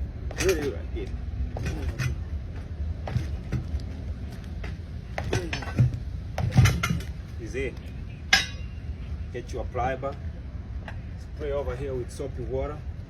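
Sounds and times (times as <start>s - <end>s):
low background rumble: 0.0s - 13.0s
metal clinks and knocks: 5.2s - 7.2s, 8.3s - 8.8s.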